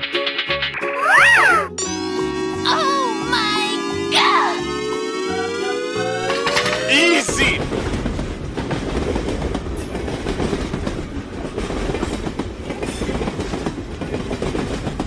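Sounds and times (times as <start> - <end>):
train rumbling: 0.0 - 15.0
wheels clacking over rails: 4.9 - 15.0.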